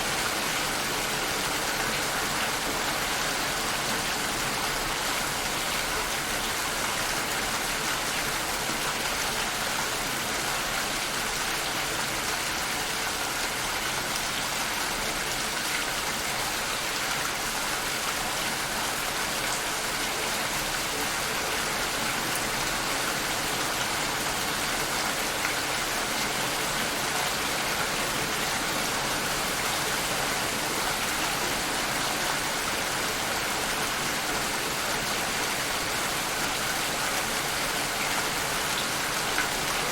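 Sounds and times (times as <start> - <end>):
steady rainfall: 0.0 - 39.9.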